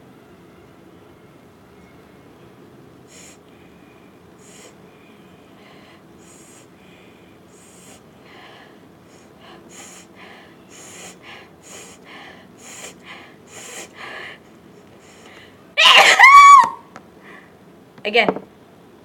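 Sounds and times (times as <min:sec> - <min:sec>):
woman sniffing sharply: 0:09.1 - 0:12.0, 0:12.6 - 0:14.0.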